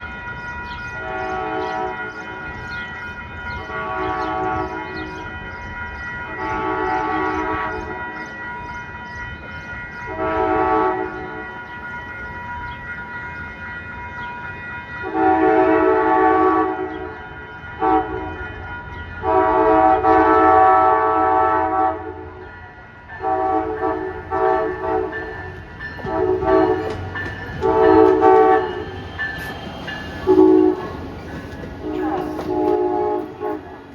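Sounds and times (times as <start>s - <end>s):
low rumble of train: 0.0s - 33.9s
locomotive air horn blasts: 1.0s - 2.1s, 3.5s - 5.2s, 6.3s - 8.1s, 10.1s - 11.6s, 15.0s - 22.4s, 23.2s - 33.9s.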